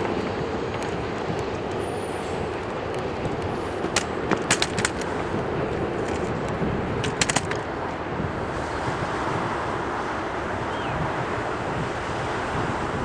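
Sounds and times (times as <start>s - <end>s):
train wheels rumbling on rail: 0.0s - 13.0s
sharp wheel clicks: 7.0s - 7.6s.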